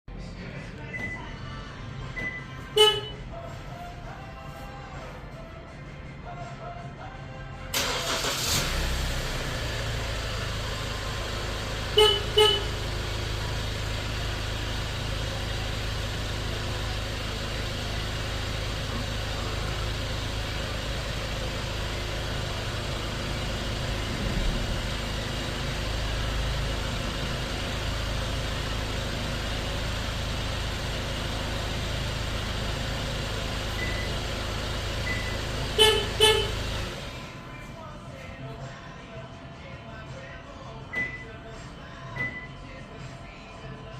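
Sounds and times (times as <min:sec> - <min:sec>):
car engine starting and idling: 0:00.1 - 0:06.7, 0:07.4 - 0:38.9, 0:40.0 - 0:43.1
car horn chirps: 0:02.2 - 0:03.4, 0:11.8 - 0:13.0, 0:35.1 - 0:37.0.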